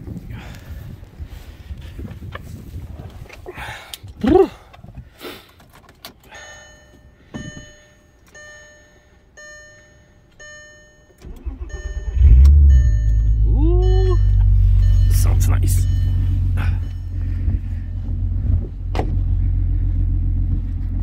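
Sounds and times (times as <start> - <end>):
wind noise: 0.0 - 5.2
car warning chime dinging: 6.3 - 18.1.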